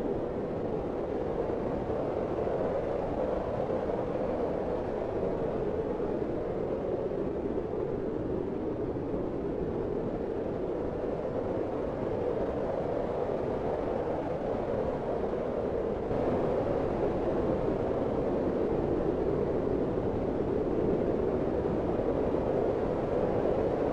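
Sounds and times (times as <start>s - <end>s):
wind blowing: 16.1s - 23.9s.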